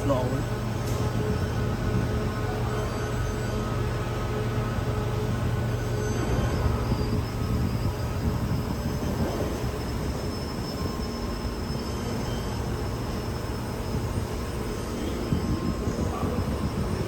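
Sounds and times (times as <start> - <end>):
faint high steady whines: 0.0 - 17.0
industrial machine rumble and hiss: 0.0 - 17.0.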